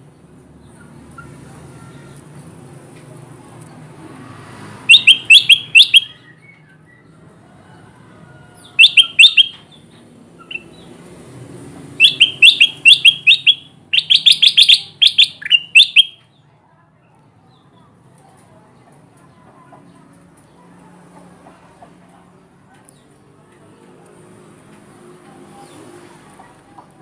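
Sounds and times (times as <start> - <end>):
bird chirping: 4.9 - 7.0, 8.8 - 11.0, 12.0 - 16.2.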